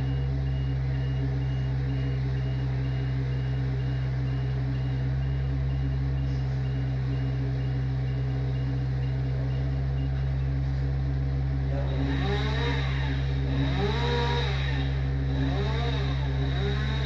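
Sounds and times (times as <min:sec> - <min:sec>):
high beeps: 0:00.0 - 0:10.6
heavy engine running: 0:00.0 - 0:17.0
motor revving: 0:00.0 - 0:17.0.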